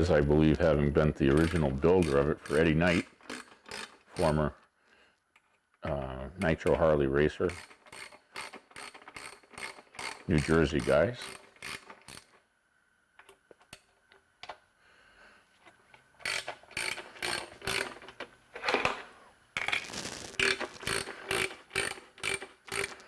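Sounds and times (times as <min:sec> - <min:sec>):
ratchet wrench clicking: 0:01.3 - 0:04.2, 0:07.5 - 0:10.6, 0:16.2 - 0:18.0, 0:20.4 - 0:23.0.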